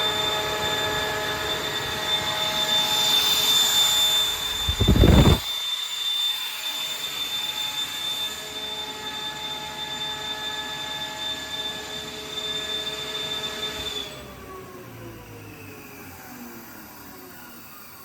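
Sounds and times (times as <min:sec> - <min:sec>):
loud low burst: 0:04.4 - 0:05.4.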